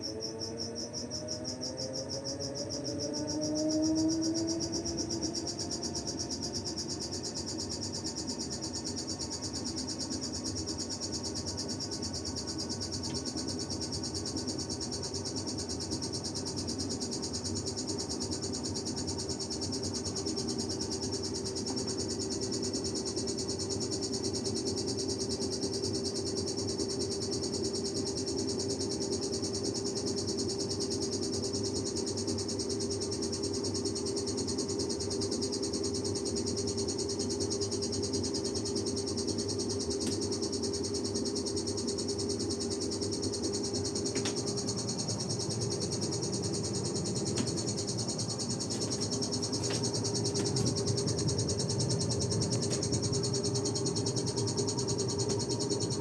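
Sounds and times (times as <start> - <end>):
washing machine drum spinning: 45.2 - 53.3.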